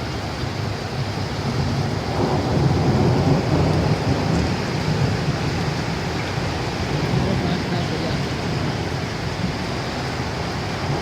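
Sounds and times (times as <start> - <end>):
heavy rain pouring: 0.0 - 11.0.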